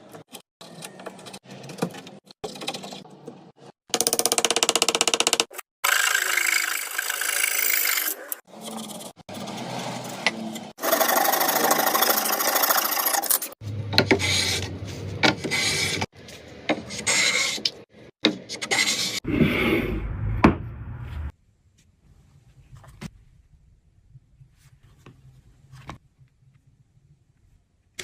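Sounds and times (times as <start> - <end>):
woodworking tools rasping wood: 5.9 - 16.1, 16.7 - 17.8.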